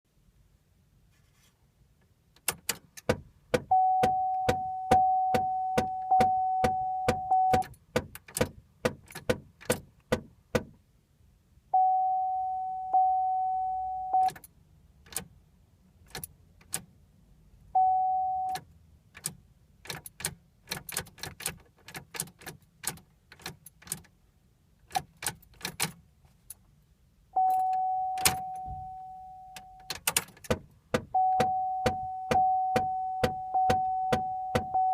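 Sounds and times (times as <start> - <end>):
car ignition clicking: 2.3 - 10.7, 14.2 - 15.3, 16.0 - 16.9, 18.4 - 24.2, 24.8 - 26.6, 27.4 - 28.9, 29.5 - 34.9
electronic warning chime: 3.7 - 7.6, 11.8 - 14.3, 27.4 - 29.8, 31.2 - 34.9.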